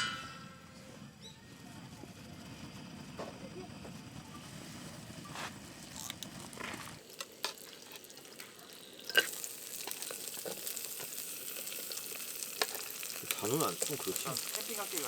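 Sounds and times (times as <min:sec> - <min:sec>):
food sizzling in a pan: 0:04.4 - 0:15.0.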